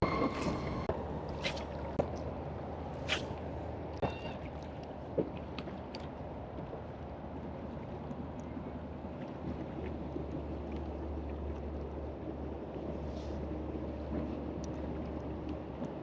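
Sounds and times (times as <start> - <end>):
low engine drone: 0.0 - 4.6
wind: 0.0 - 16.0.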